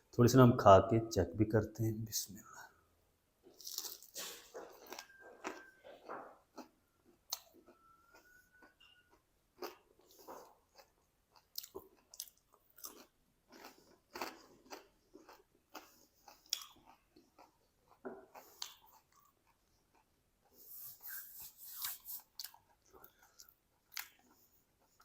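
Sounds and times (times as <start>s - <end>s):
crunchy chewing: 3.5s - 20.7s.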